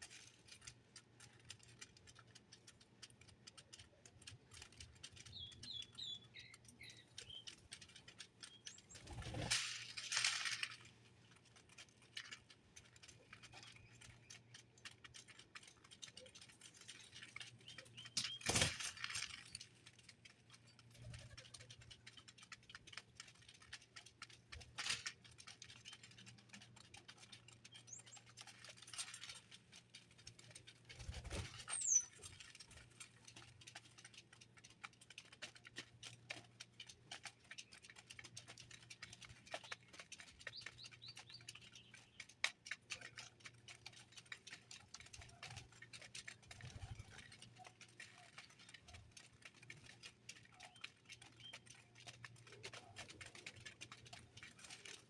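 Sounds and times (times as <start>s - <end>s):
birds pecking and scratching: 0.0s - 55.0s
wings rustling and fluttering: 0.0s - 55.0s
faint bird chirps: 5.3s - 7.6s, 31.5s - 32.5s.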